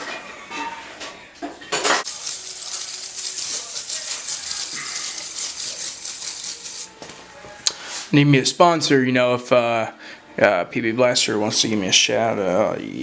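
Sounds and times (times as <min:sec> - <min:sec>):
scrubbing on metal: 0:02.0 - 0:06.9
spray can burst: 0:02.0 - 0:06.9.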